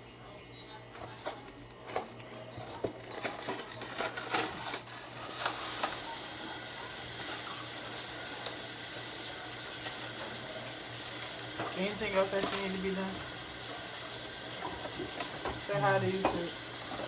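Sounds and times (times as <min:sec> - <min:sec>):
tap water running into sink: 0:07.6 - 0:17.0.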